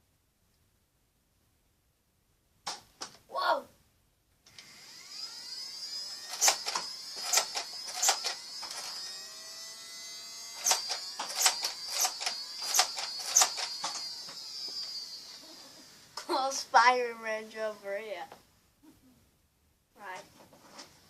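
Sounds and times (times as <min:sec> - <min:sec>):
dart shots snapping: 0:02.6 - 0:03.2
blaster motor whining: 0:04.5 - 0:16.3.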